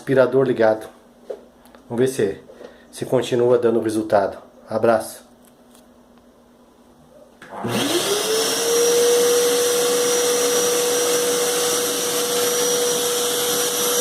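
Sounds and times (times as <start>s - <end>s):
vacuum cleaner running: 7.4s - 14.0s.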